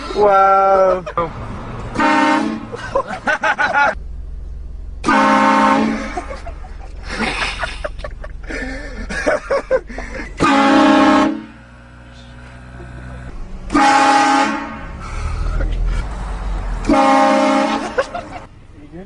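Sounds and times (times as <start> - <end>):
voices: 0.0 - 1.4
train horn blasts: 2.0 - 2.7, 5.0 - 6.2, 10.4 - 12.7, 13.7 - 15.0, 16.8 - 17.9.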